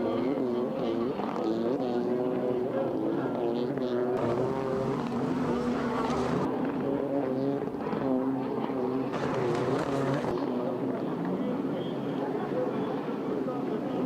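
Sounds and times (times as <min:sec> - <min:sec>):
jet ski engines revving: 0:00.2 - 0:11.2.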